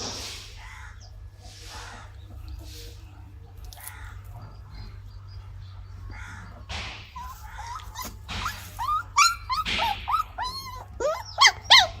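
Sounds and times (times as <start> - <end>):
puppy breathy huffs: 7.1 - 12.0
puppy whining and yipping: 7.1 - 12.0.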